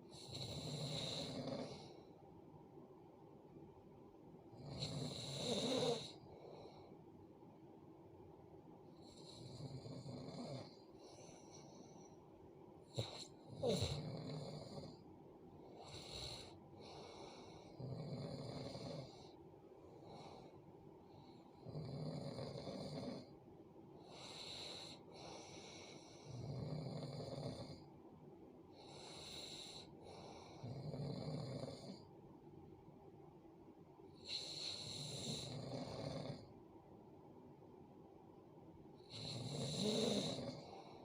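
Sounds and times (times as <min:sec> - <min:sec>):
quiet breaths: 0:00.0 - 0:41.0
person snoring: 0:00.1 - 0:02.0, 0:04.6 - 0:06.8, 0:09.0 - 0:11.8, 0:12.9 - 0:15.0, 0:15.8 - 0:19.4, 0:21.6 - 0:23.3, 0:24.1 - 0:27.8, 0:29.0 - 0:32.0, 0:34.2 - 0:36.5, 0:39.0 - 0:41.0.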